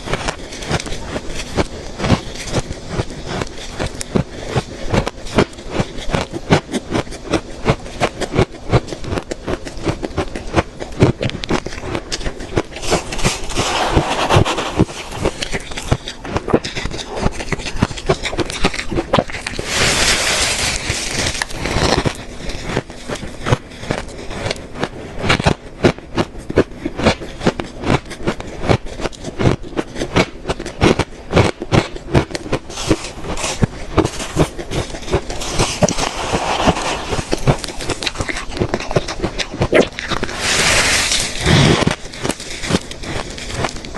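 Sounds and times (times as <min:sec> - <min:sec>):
ice rasping: 0:00.0 - 0:24.6, 0:31.4 - 0:43.9
chewing crunchy ice: 0:00.0 - 0:43.9.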